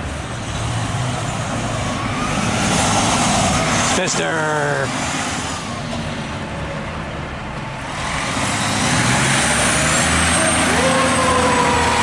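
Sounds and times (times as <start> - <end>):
fire engine running: 0.0 - 12.0
fire engine siren: 1.8 - 4.2, 9.8 - 12.0.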